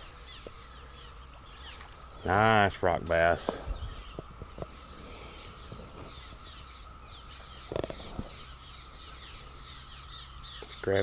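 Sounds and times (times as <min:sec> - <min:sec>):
steady thin hum: 0:00.0 - 0:11.0
wild birds chirping: 0:00.0 - 0:11.0.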